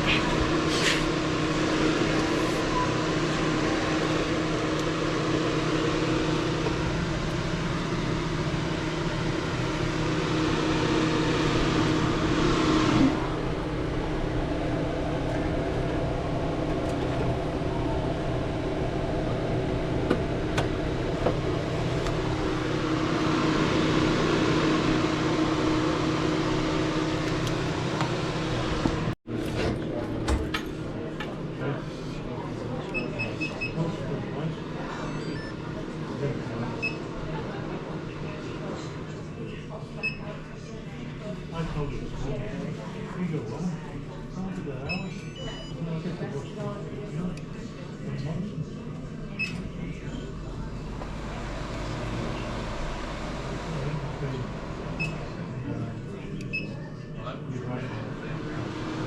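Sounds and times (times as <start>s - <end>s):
machine humming: 0.0s - 29.2s, 49.7s - 57.2s.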